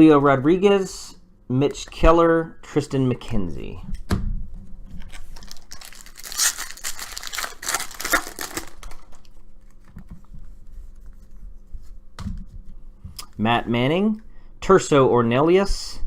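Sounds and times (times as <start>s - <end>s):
wrapper tearing and crinkling: 5.0s - 9.8s
soft handling noise: 8.8s - 13.4s.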